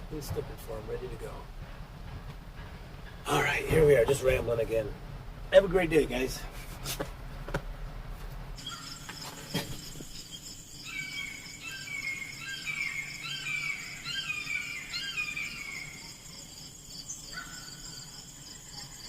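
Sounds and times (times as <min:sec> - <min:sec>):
insects trilling: 0:08.6 - 0:19.0
songbird singing: 0:08.6 - 0:19.0.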